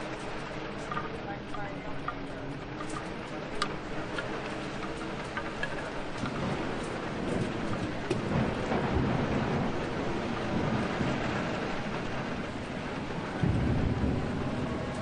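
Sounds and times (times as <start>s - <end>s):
steady rain falling: 0.0s - 15.0s
low rolling thunder: 3.8s - 15.0s.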